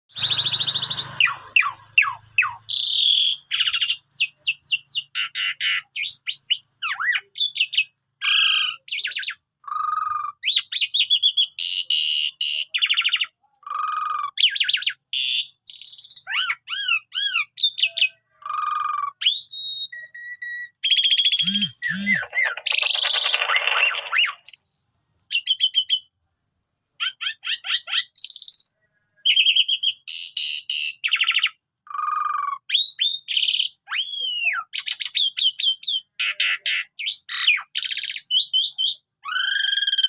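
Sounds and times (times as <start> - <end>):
starling singing: 21.2 - 24.6.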